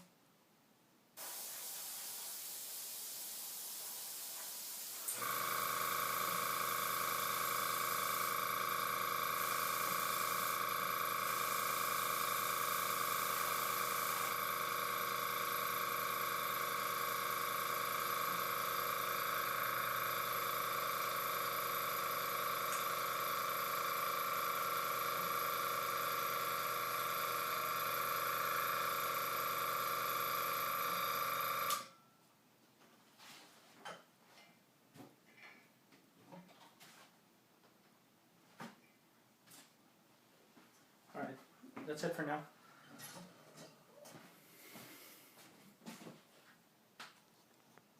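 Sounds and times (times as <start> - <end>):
compressor motor whining: 5.1 - 31.9.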